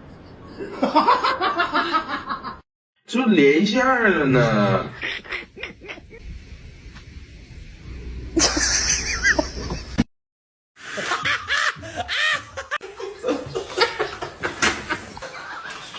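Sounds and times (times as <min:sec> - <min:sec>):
people laughing: 0:00.6 - 0:02.6, 0:04.8 - 0:06.2, 0:08.4 - 0:10.0, 0:10.8 - 0:15.9.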